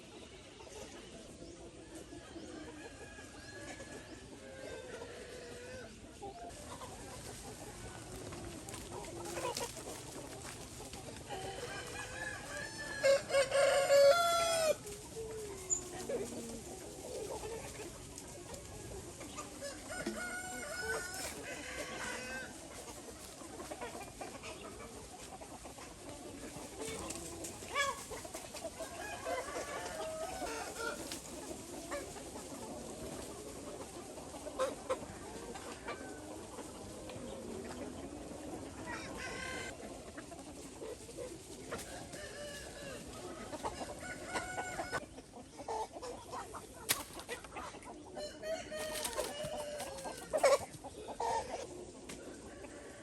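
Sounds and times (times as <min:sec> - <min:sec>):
chickens clucking: 0:00.0 - 0:53.0
rooster crowing: 0:11.4 - 0:14.8, 0:19.6 - 0:22.5, 0:28.9 - 0:30.9, 0:48.2 - 0:50.4.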